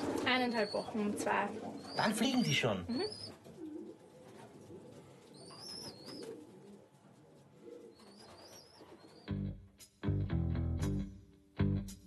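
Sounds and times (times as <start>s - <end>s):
pigeons cooing softly: 0.0s - 9.3s.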